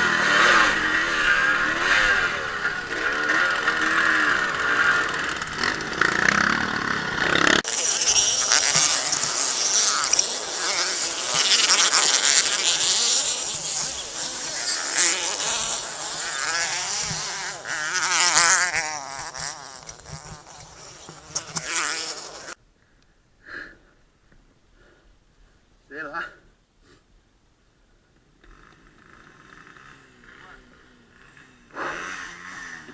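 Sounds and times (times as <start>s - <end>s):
motorcycle engines revving: 0.0s - 22.6s, 28.4s - 32.9s.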